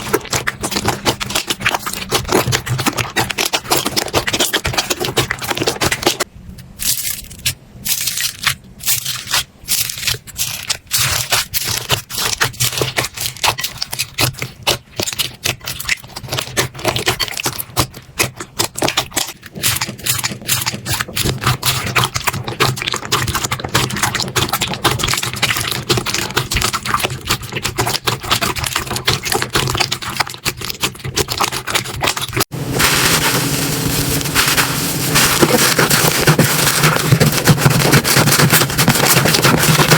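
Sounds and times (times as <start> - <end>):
slime crackling and popping: 0.0 - 39.9.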